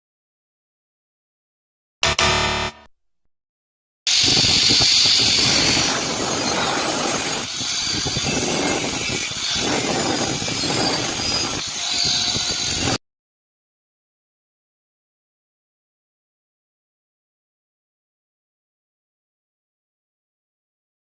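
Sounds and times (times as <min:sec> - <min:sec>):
arc welding crackling and hissing: 0:04.1 - 0:13.0.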